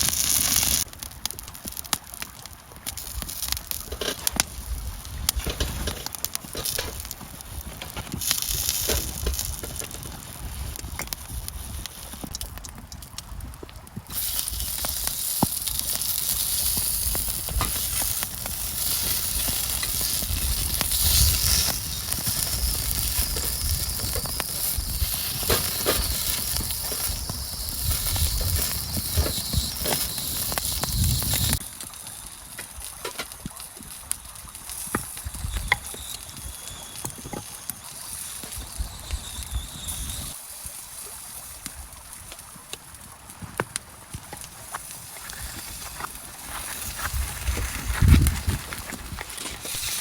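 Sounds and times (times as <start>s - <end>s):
food sizzling in frying: 0.0s - 12.5s, 14.1s - 43.1s, 44.1s - 50.0s
crackles and ticks: 0.0s - 50.0s.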